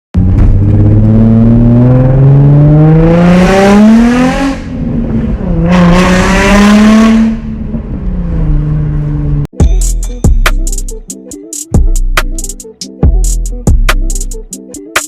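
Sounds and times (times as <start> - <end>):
car engine accelerating: 0.2 - 9.5.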